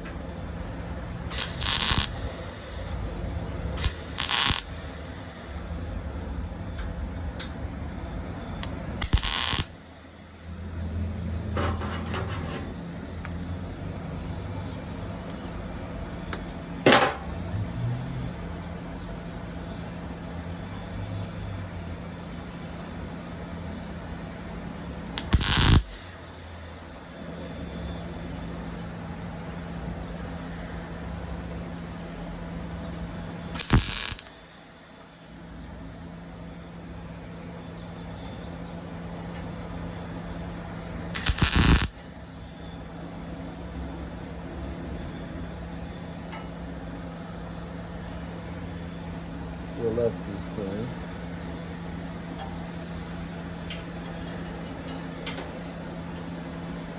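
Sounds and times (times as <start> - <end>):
steady hum: 0.0 - 56.9
electric arc welding bursts: 1.3 - 3.0, 3.8 - 5.6, 9.0 - 10.6, 12.4 - 13.5, 25.2 - 26.9, 33.6 - 35.0, 41.2 - 42.7.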